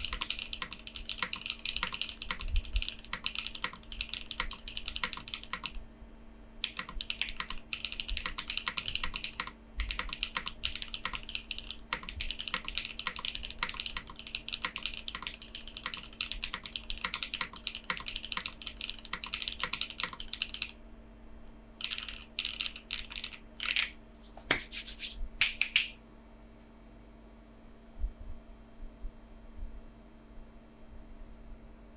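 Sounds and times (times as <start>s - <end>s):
mechanical keyboard typing: 0.0s - 5.8s, 6.6s - 20.8s, 21.8s - 23.9s.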